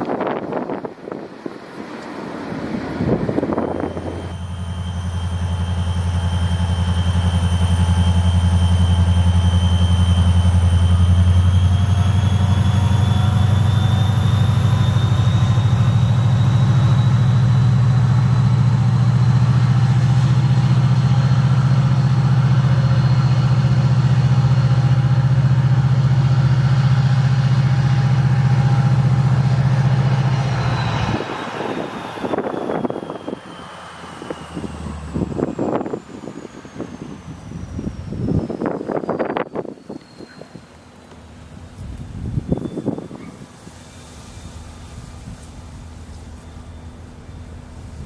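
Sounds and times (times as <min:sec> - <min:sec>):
diesel locomotive engine rumbling: 0:00.0 - 0:48.0
turbocharger whine: 0:00.0 - 0:48.0.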